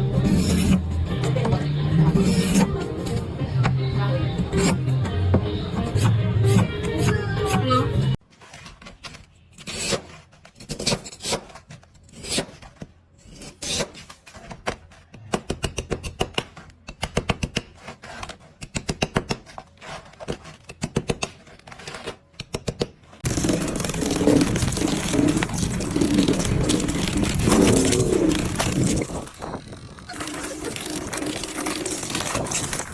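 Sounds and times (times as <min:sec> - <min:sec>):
background music: 0:00.0 - 0:08.2
ice crackling and clicking: 0:23.2 - 0:32.9.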